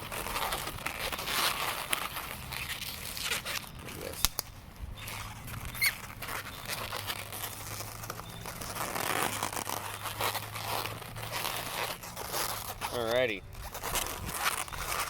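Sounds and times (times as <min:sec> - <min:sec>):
balloons rubbing and squeaking: 0:00.0 - 0:15.0
sharp click: 0:04.2 - 0:04.5.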